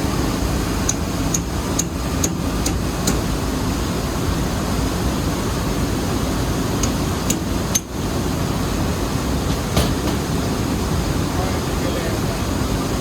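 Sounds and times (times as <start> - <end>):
mill machinery rumbling: 0.0 - 13.0
metal tools knocking on metal: 9.7 - 10.3.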